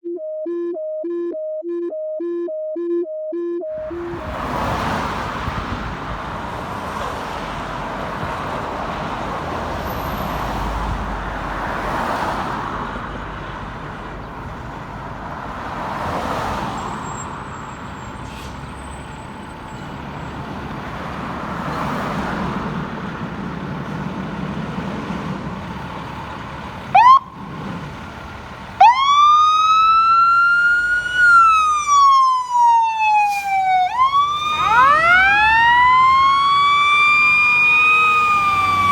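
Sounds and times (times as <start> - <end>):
fire engine siren wailing: 0.0 - 12.4, 25.7 - 38.9
traffic passing: 3.6 - 38.9.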